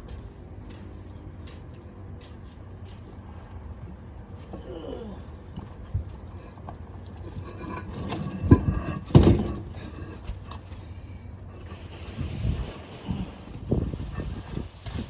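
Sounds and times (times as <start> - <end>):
dull thumps: 7.3 - 10.7.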